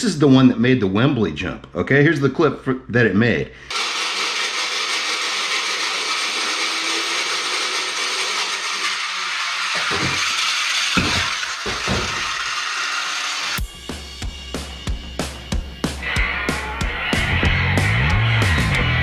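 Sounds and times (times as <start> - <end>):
toy launcher whirring: 3.7 - 13.6.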